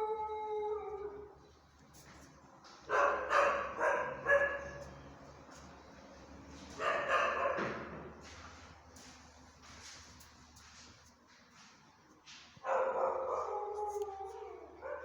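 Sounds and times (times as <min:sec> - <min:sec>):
dog barking: 0:02.9 - 0:04.8, 0:06.8 - 0:07.9, 0:12.6 - 0:13.7, 0:14.8 - 0:15.0.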